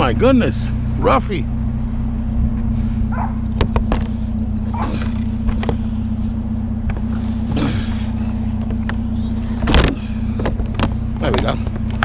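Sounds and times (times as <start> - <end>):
vehicle engine idling: 0.0 - 12.0
dog barking: 3.1 - 3.5.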